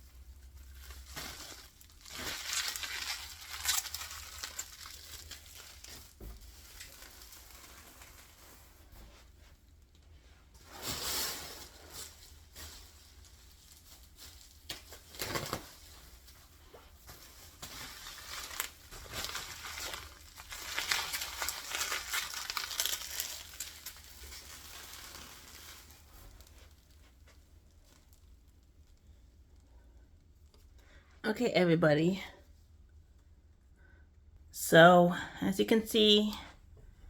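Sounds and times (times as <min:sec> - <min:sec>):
packing material crinkling: 0:00.1 - 0:09.3, 0:10.6 - 0:29.0.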